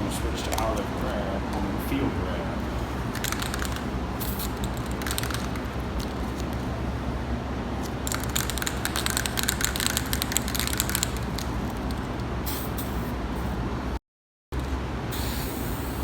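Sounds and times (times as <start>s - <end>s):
steady low hum: 0.0s - 14.0s
spray-paint can hissing: 3.1s - 6.5s, 7.8s - 13.5s, 15.1s - 16.0s.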